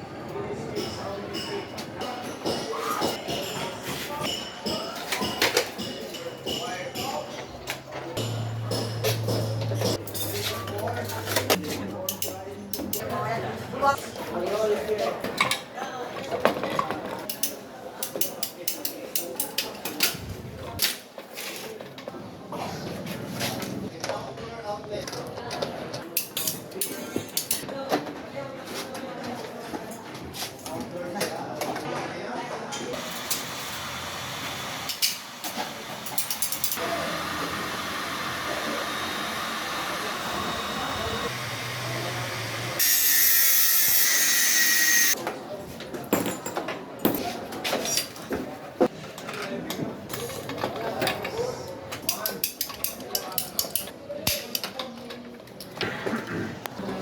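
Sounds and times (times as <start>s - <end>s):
metal tools clicking and clinking: 36.0s - 36.8s, 52.1s - 54.9s
power drill whirring: 36.8s - 45.2s.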